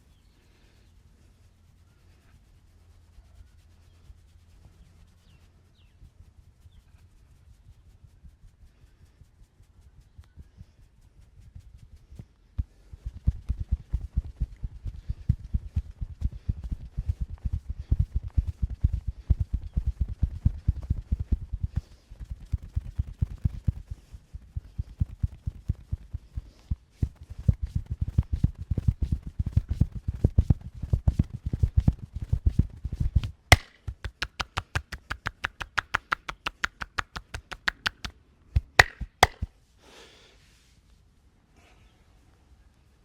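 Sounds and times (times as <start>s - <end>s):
hands slapping skin: 31.6s - 39.5s
hands thumping body in massage: 33.5s - 39.5s
sharp cracks: 33.5s - 39.5s.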